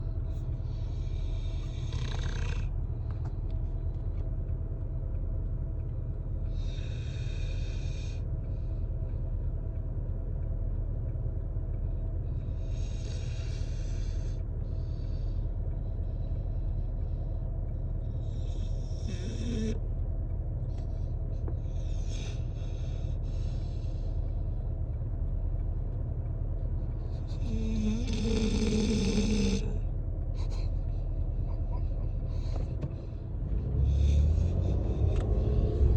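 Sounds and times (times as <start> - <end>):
dog snoring: 0.7 - 2.8, 12.5 - 15.3, 18.1 - 19.8, 21.7 - 23.8, 27.1 - 30.7, 33.6 - 35.9.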